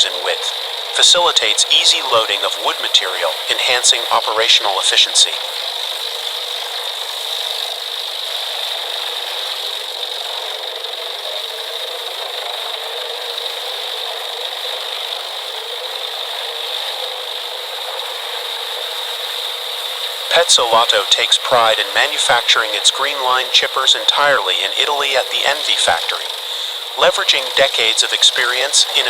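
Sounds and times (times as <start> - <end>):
wood chipper running: 0.0 - 4.2, 5.2 - 20.8, 26.2 - 27.1
high whine: 0.0 - 29.0.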